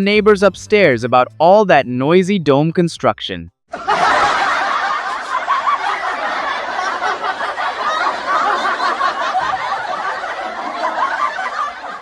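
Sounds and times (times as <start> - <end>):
people laughing: 3.7 - 12.0.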